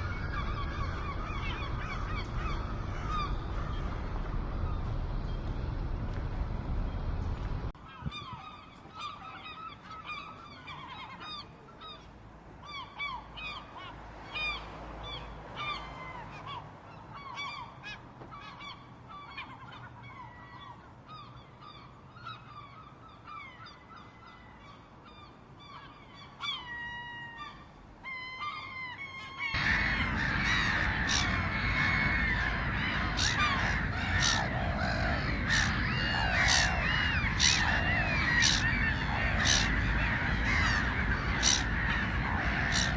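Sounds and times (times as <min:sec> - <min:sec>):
gulls squawking: 0:00.0 - 0:04.1, 0:28.4 - 0:42.9
noisy wash: 0:29.6 - 0:42.9.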